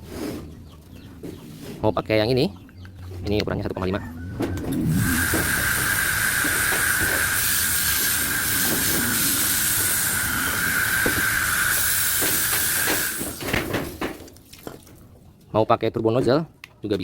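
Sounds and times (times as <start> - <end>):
pressure washer spraying water: 4.8 - 14.1.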